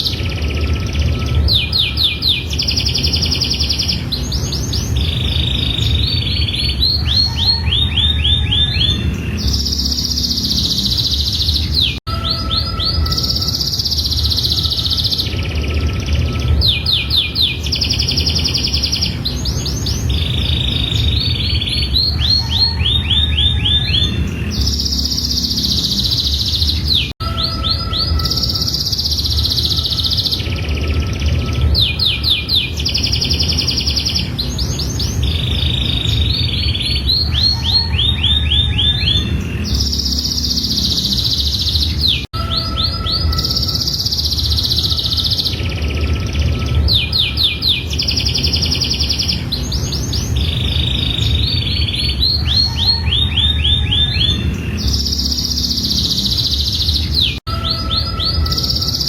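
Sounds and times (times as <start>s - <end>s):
steady low rumble: 0.0s - 42.3s
canary singing rapid trills: 0.0s - 59.0s.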